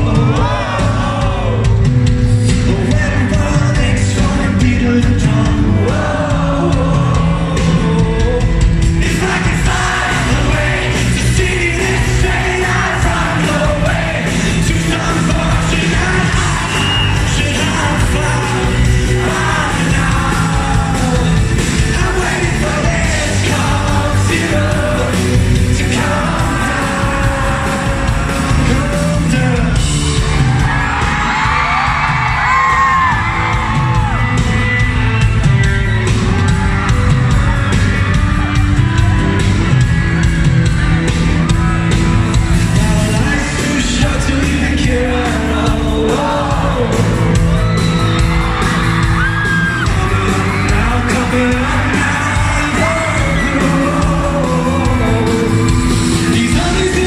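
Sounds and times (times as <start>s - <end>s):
man singing: 0.0s - 33.2s, 42.6s - 47.5s, 49.5s - 57.0s
live rock band: 0.0s - 57.0s
audience yelling and whooping: 5.6s - 57.0s.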